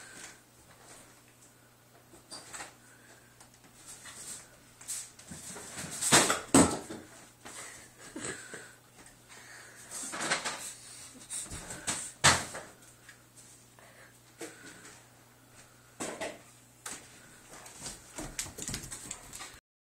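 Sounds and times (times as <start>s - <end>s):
dog paws scrambling on floor: 16.8s - 19.6s.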